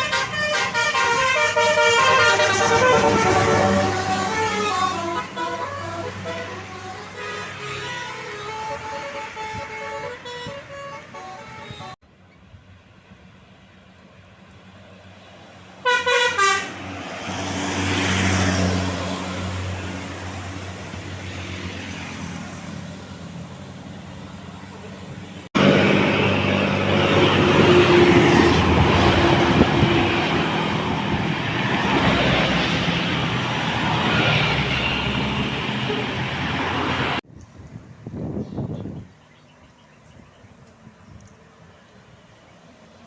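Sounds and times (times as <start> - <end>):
multi-tone bus horn toots: 0.0 - 12.0, 15.8 - 16.9, 25.6 - 30.7, 33.8 - 36.4
bus diesel engine climbing: 0.0 - 43.0
passing bus engine and road noise: 0.0 - 43.0.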